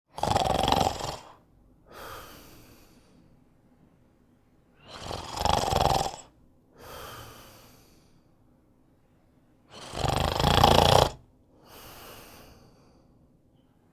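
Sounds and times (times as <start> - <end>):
rattling snore: 0.2 - 1.4, 4.9 - 6.3, 9.8 - 11.2
airy breath: 1.9 - 3.5, 6.8 - 8.4, 11.6 - 13.3.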